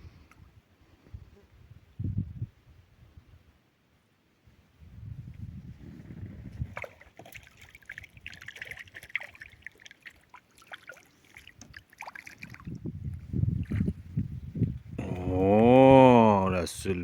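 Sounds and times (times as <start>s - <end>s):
water splashing and sloshing: 6.5s - 14.2s.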